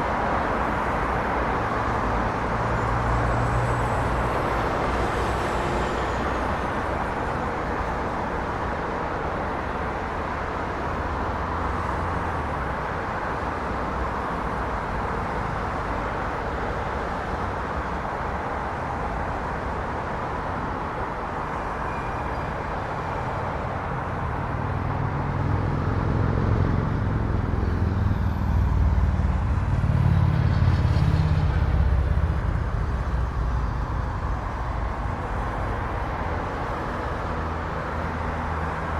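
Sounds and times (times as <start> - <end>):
passing vehicles: 0.0 - 38.9
heavy vehicle low rumble: 22.9 - 38.9.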